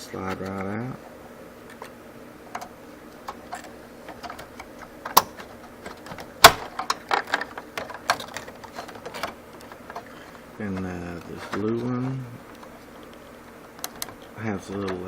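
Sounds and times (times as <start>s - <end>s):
computer parts clicking and tapping: 3.3s - 10.1s.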